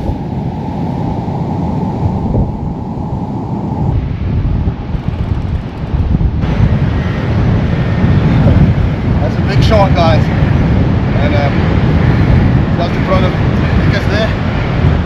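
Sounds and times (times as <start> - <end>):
wind buffeting microphone: 0.0 - 15.0
surf breaking on shore: 3.9 - 15.0.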